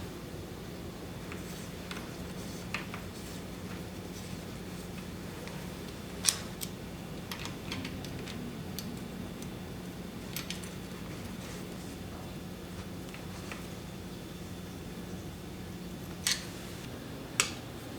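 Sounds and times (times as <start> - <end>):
steady low hum: 0.0 - 17.9
clicks of tools and bicycle parts: 6.2 - 9.5, 10.3 - 10.8, 16.2 - 16.5, 17.4 - 17.6.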